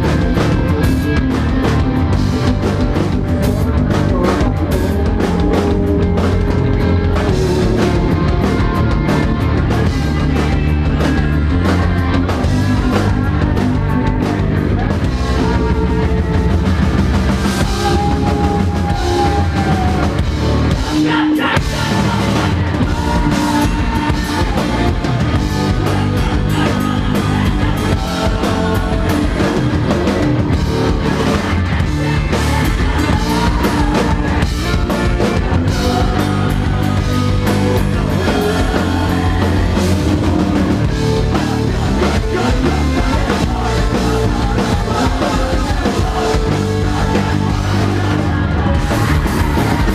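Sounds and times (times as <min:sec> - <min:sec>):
rock band playing live: 0:00.0 - 0:49.9.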